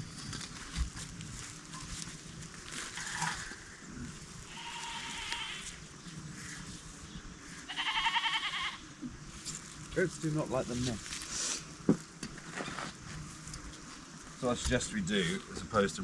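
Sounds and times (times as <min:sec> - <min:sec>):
goats bleating: 0:04.5 - 0:05.7, 0:07.6 - 0:08.8.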